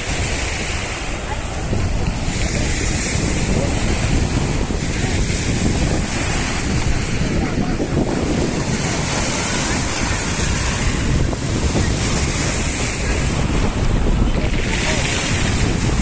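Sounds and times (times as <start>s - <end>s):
surf washing in: 0.0s - 16.0s
wind buffeting microphone: 0.0s - 16.0s.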